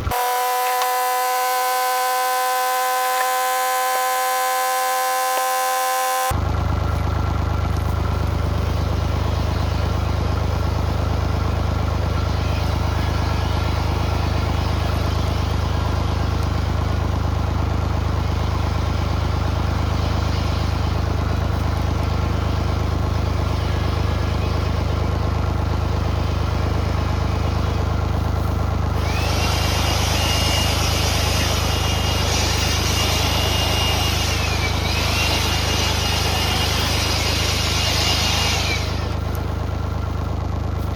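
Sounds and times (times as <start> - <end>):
hydraulic whine and hiss: 0.0 - 6.3, 29.0 - 39.2
diesel engine idling: 0.0 - 40.9.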